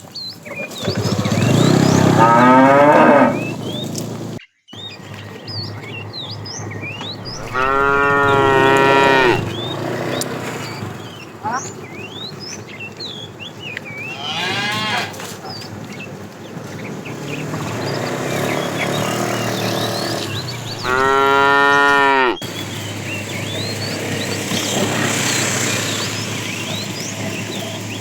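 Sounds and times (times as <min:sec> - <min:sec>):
cattle mooing: 0:01.7 - 0:03.5, 0:07.3 - 0:09.6, 0:14.1 - 0:15.3, 0:18.9 - 0:22.4.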